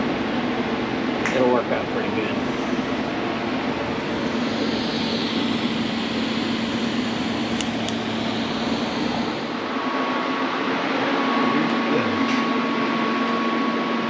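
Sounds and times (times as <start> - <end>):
mechanical drone with hum: 0.0 - 14.0.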